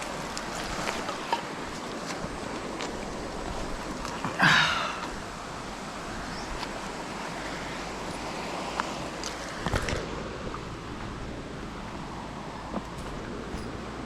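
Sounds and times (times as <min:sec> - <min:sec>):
rushing outdoor noise: 0:00.0 - 0:14.0.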